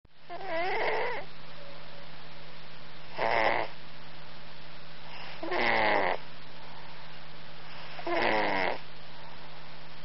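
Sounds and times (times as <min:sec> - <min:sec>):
steady low hum: 0:00.1 - 0:10.0
cat snoring: 0:00.3 - 0:01.3, 0:03.1 - 0:03.8, 0:05.1 - 0:06.2, 0:07.7 - 0:08.8.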